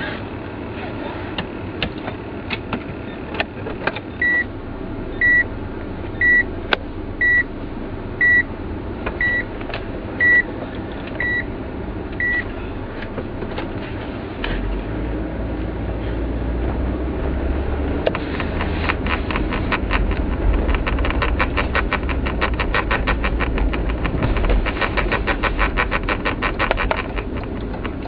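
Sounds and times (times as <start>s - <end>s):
car running and road noise: 0.0s - 28.0s
clicks and rattles: 18.0s - 28.0s.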